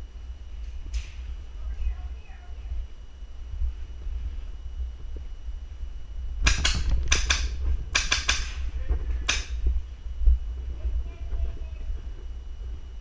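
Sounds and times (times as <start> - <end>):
low rumble: 0.0 - 13.0
airsoft gunshots: 6.4 - 8.6.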